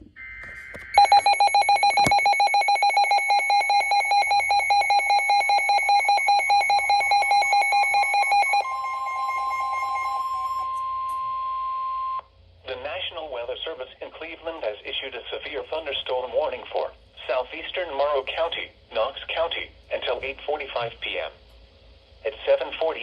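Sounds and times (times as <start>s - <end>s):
steady single-pitch alarm tone: 0.0s - 12.2s
rapid electronic alarm beeping: 0.2s - 12.2s.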